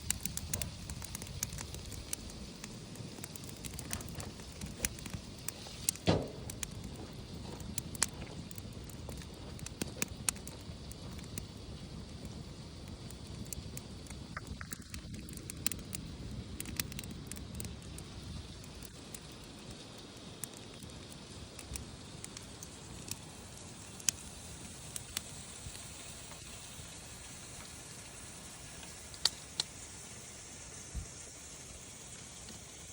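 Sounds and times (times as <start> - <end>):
steaks sizzling on a griddle: 0.0 - 16.8, 17.4 - 32.9
campfire crackling: 0.0 - 32.9
fire pops: 0.0 - 32.9.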